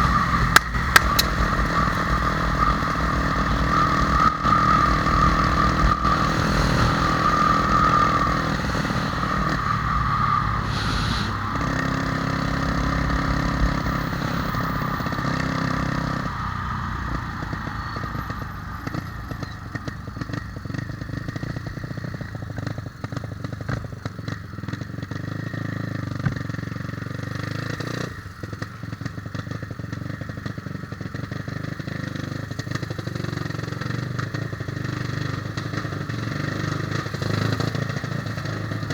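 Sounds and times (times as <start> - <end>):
light engine clatter: 0.0 - 6.7, 17.4 - 38.9
motorcycle engine running: 0.0 - 38.9.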